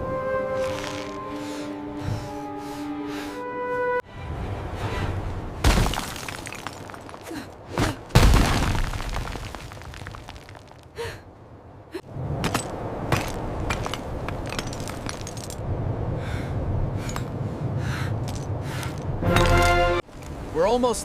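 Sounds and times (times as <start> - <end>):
ice cracking: 0.6 - 1.2, 5.7 - 7.4, 8.2 - 10.9.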